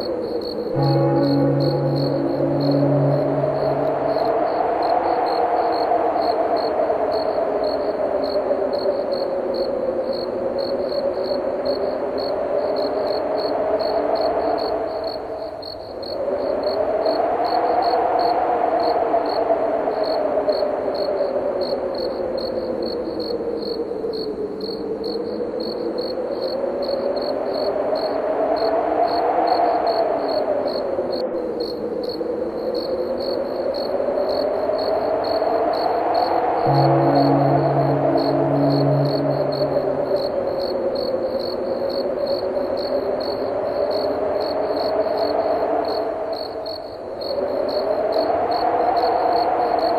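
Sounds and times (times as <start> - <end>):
wind moaning: 0.0 - 15.3, 33.9 - 46.3
crickets chirping: 0.0 - 49.9.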